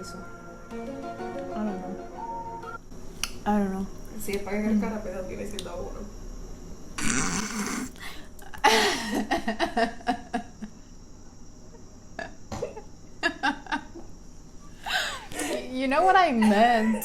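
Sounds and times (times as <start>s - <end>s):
person making croaky vocal pulses: 7.0s - 8.0s.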